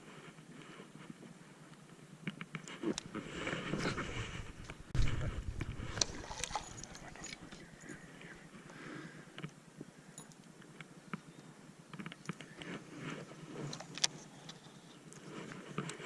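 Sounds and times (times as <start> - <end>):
fishing gear clicking and rattling: 2.9 - 8.4.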